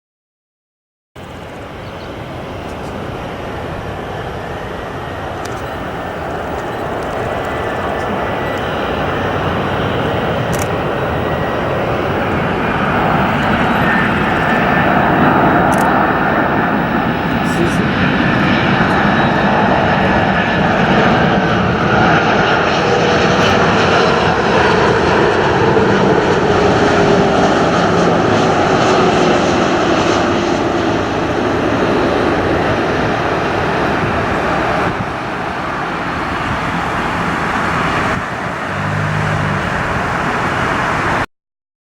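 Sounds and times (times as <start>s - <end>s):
jet engines roaring: 1.2s - 41.3s
low hum: 34.3s - 41.2s.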